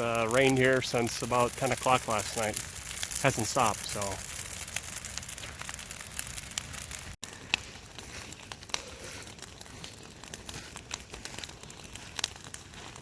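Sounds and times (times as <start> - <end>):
rain hiss: 0.0 - 4.9
fire crackling and popping: 0.0 - 13.0.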